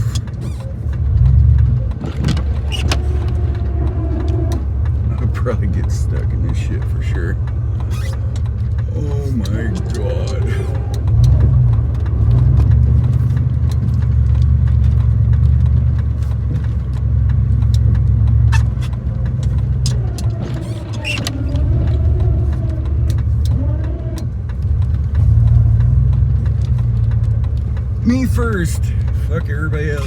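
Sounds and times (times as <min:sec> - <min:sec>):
pickup truck engine rumble: 0:00.0 - 0:30.0
scattered clicks: 0:00.0 - 0:30.0.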